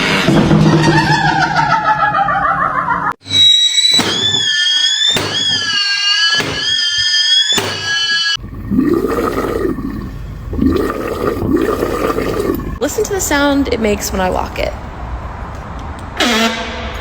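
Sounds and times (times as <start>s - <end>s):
high-pitched wavering squeal: 3.2s - 8.4s.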